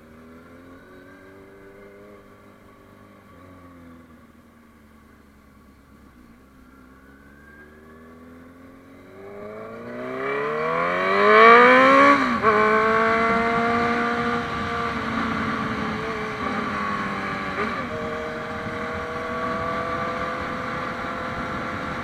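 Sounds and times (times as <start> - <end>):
motorcycle engine accelerating: 0.0 - 4.3, 5.9 - 22.0
wind rush: 11.3 - 22.0.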